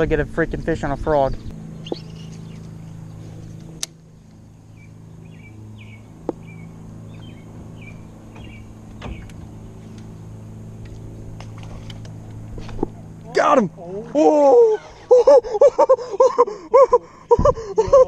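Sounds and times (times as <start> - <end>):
low motor hum: 0.0 - 18.0
bird chirps: 1.3 - 3.3, 4.6 - 9.4.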